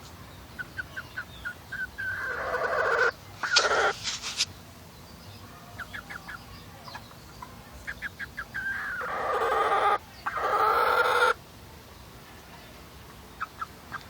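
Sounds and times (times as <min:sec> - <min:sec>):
hen clucking softly: 0:00.6 - 0:04.0, 0:05.8 - 0:11.4
hen drawn-out calls: 0:00.8 - 0:04.0, 0:07.9 - 0:11.4.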